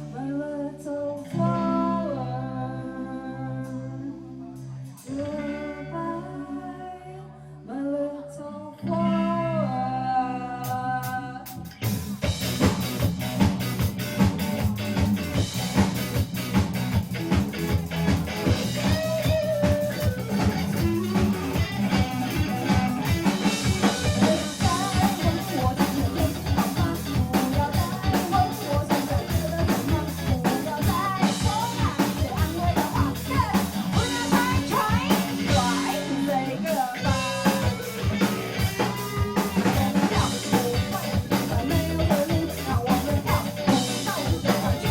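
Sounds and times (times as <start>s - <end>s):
person singing: 0.0s - 11.7s, 18.5s - 44.9s
rock band playing: 10.3s - 44.9s.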